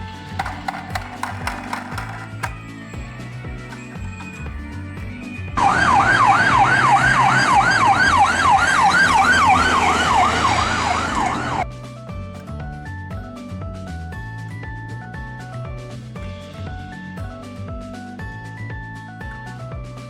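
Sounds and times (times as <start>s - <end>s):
light background music: 0.0s - 20.0s
electronic siren wailing: 5.6s - 11.6s.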